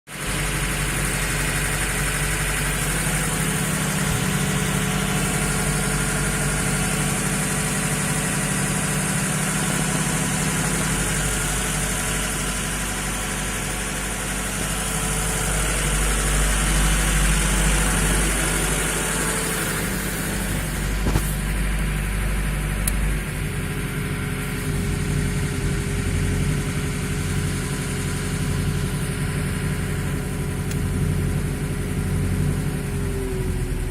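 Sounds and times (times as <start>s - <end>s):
petrol engine idling with knocking: 0.1s - 33.9s.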